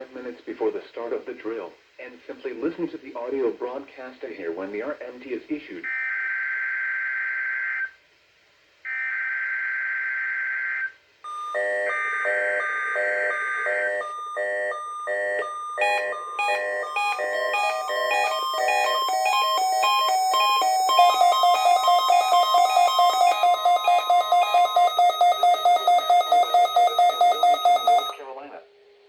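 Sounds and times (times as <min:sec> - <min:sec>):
electronic alert beeping: 0:11.3 - 0:28.2.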